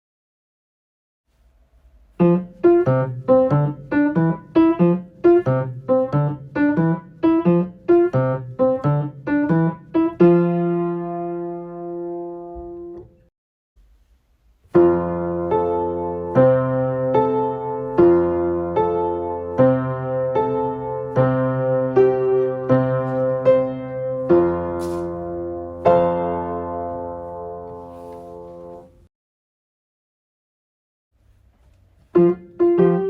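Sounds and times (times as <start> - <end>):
piano playing: 2.2 - 13.2, 14.7 - 29.0, 32.1 - 33.0.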